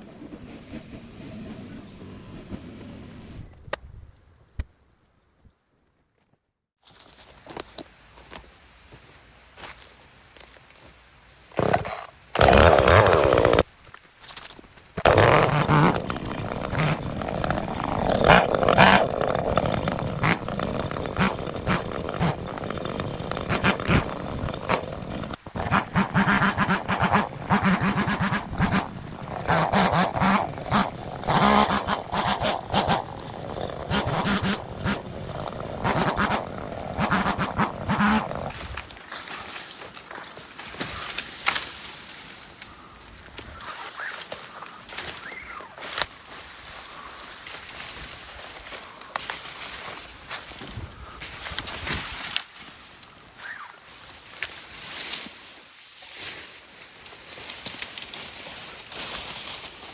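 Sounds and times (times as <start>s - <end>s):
chainsaw engine revving: 11.6s - 13.7s, 15.0s - 38.9s.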